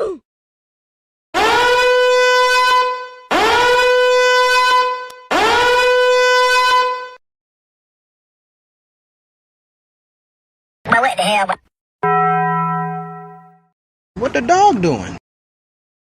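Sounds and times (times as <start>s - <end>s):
loud horn blasts: 1.4s - 7.2s.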